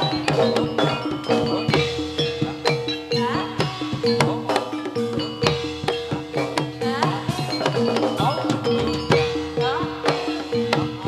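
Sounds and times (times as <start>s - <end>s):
ringing metallophone notes: 0.0s - 11.0s.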